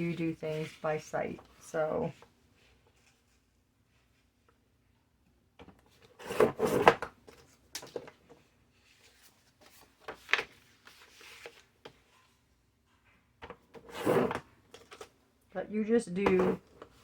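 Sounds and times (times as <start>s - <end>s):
paper rustling and rubbing: 8.7s - 12.3s.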